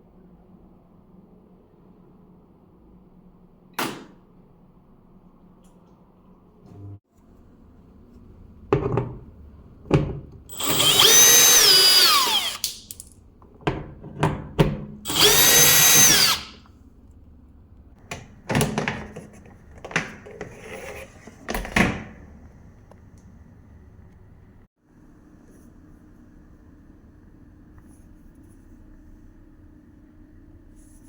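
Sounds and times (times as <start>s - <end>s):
power drill whining: 10.5s - 12.7s, 15.1s - 16.6s.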